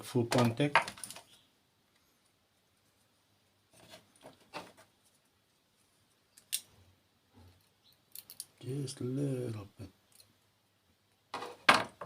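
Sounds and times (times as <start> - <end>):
small tool clicking and scraping metal: 7.5 - 8.6, 10.1 - 10.4.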